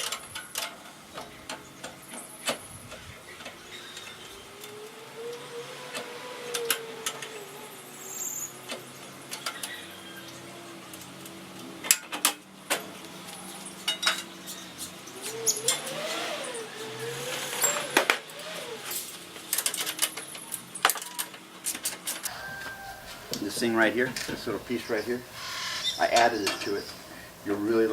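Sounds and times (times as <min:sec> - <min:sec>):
wrenches and bolts clinking on metal: 0:05.9 - 0:22.3, 0:25.8 - 0:27.0
faint wavering hum: 0:22.3 - 0:27.9.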